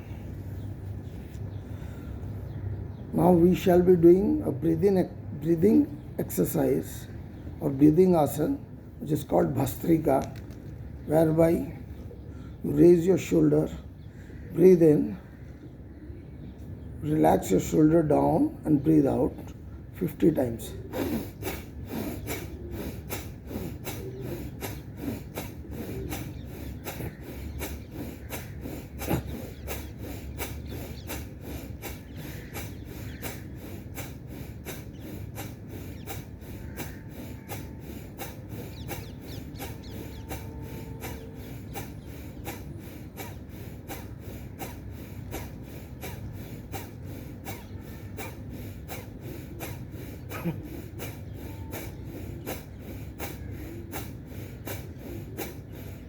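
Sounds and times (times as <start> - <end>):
man breathing forcefully through nose: 0.0 - 2.6, 20.7 - 56.0.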